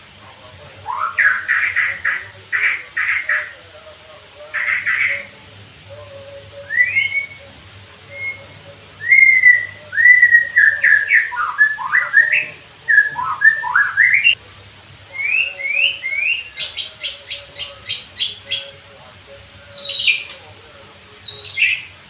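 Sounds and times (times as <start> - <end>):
bird singing whistled phrases: 0.8 - 3.5, 4.5 - 5.3, 6.6 - 14.4, 15.1 - 18.8, 19.7 - 20.4, 21.2 - 22.0.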